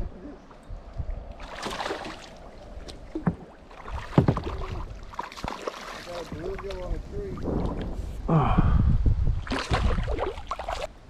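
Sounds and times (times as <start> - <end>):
water splashing: 1.2 - 8.0, 9.4 - 11.0
knocks on kayak hull: 4.1 - 4.6.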